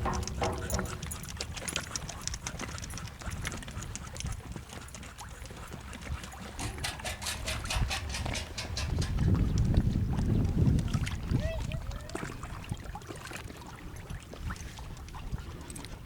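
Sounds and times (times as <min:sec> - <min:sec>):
wind rumbling on microphone: 0:00.0 - 0:04.8, 0:05.8 - 0:16.0.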